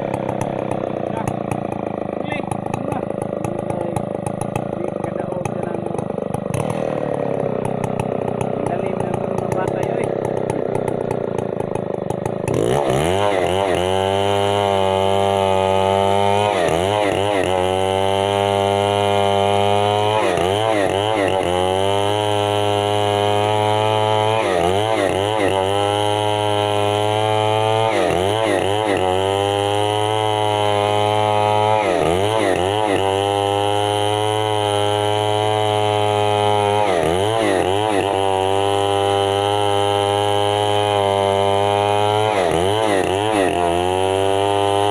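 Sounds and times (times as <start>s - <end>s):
chainsaw engine revving: 0.0s - 44.9s.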